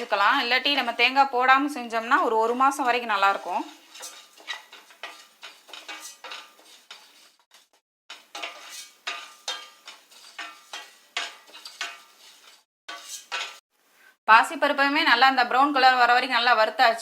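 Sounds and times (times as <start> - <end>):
spatula scraping a pan: 2.0 - 13.6.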